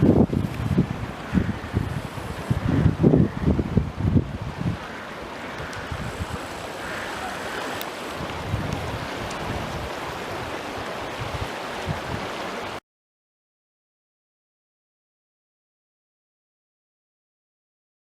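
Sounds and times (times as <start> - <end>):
wind buffeting microphone: 0.0 - 12.6
floodwater rushing: 0.0 - 12.8.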